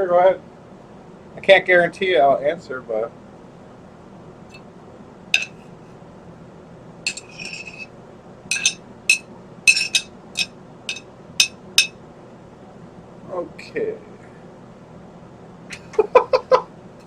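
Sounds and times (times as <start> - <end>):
kitchenware clinking: 5.4 - 5.6, 7.1 - 7.9, 8.5 - 11.9.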